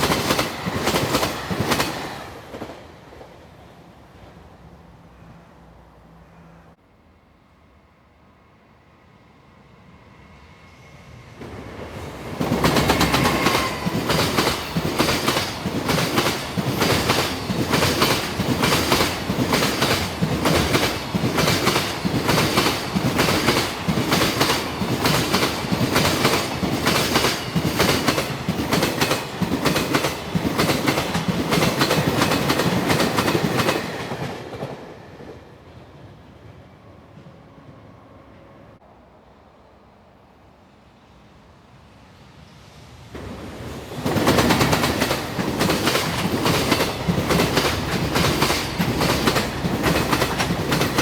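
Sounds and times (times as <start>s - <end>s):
train wheels clacking over rail joint: 12.4s - 34.8s, 44.0s - 51.0s.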